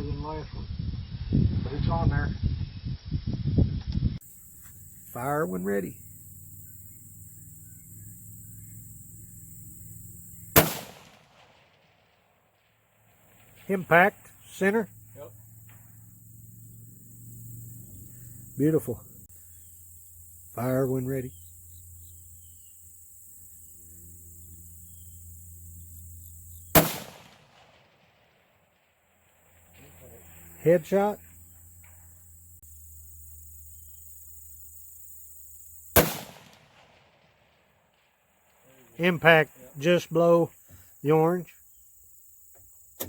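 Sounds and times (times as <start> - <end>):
faint steady hum: 4.2 - 11.5, 12.9 - 38.9
high insect drone: 4.2 - 43.0
rifle shot: 10.5 - 12.3, 26.7 - 28.9, 35.9 - 38.1.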